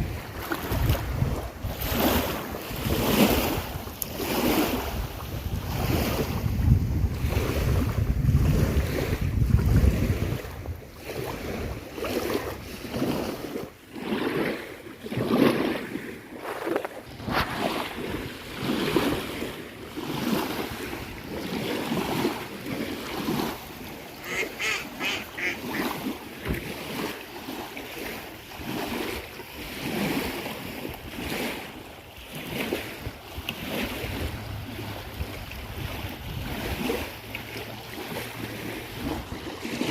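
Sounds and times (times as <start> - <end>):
wind buffeting microphone: 0.0 - 14.5, 15.1 - 27.1, 28.5 - 39.9
waves washing onto shore: 0.0 - 39.9
bird rapid calls: 24.2 - 25.9.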